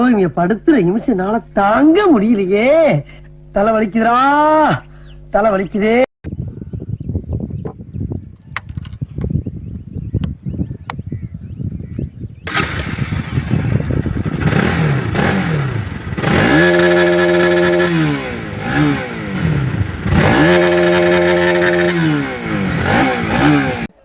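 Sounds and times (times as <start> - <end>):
motorcycle engine revving: 12.3 - 24.0.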